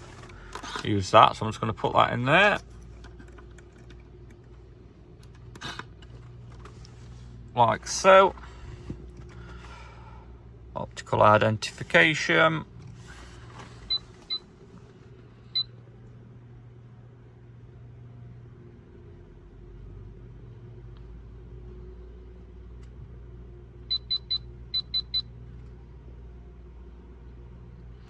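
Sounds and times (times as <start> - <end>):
key-cutting machine humming: 0.0 - 7.6.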